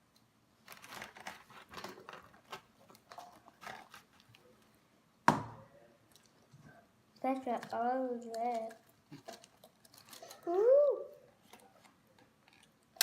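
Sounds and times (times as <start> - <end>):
crackling and clicking: 7.2 - 10.5.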